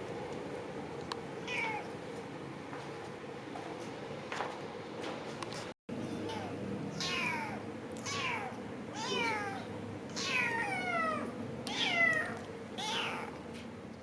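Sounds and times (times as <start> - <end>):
cat meowing: 1.4 - 1.9, 6.1 - 13.4.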